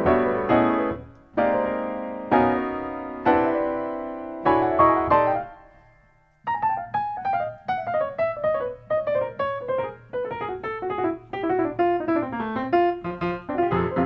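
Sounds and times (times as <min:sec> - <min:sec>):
piano music: 0:00.0 - 0:14.0.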